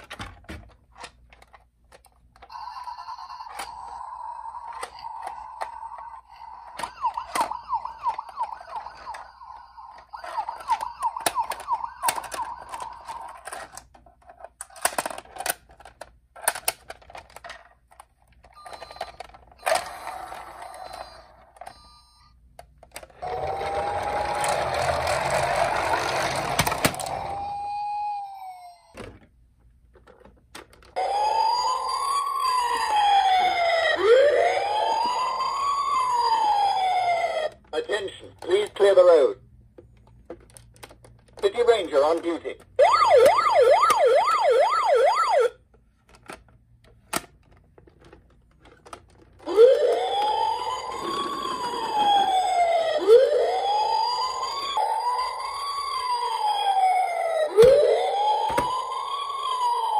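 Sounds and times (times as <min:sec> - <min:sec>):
plastic toys clicking and knocking: 0:00.0 - 0:02.5, 0:03.4 - 0:21.8, 0:22.6 - 0:27.5, 0:28.9 - 0:31.0, 0:39.8 - 0:44.1, 0:45.7 - 0:59.6
toy siren warbling: 0:02.4 - 0:13.6, 0:18.6 - 0:22.4, 0:23.0 - 0:29.1, 0:31.0 - 0:39.0, 0:41.6 - 0:45.6, 0:49.4 - 0:59.9
siren wailing up and down: 0:02.5 - 0:13.4, 0:18.6 - 0:22.1, 0:23.2 - 0:29.0, 0:31.0 - 0:38.0, 0:42.8 - 0:45.6, 0:49.4 - 0:59.9.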